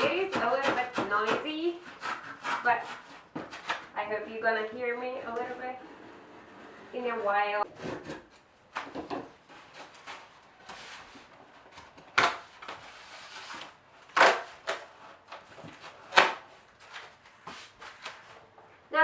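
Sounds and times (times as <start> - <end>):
knife cutting foam board: 0.0 - 4.4.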